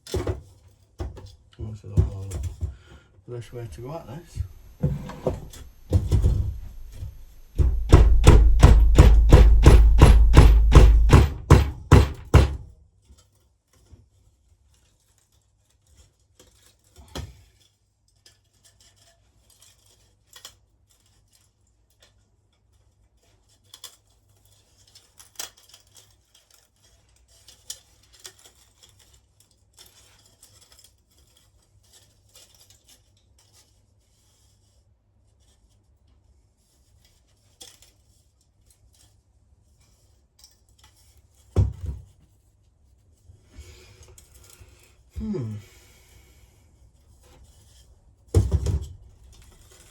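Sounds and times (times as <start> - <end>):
dull knock: 3.6 - 12.6
faint metallic clicks and scrapes: 13.0 - 45.1.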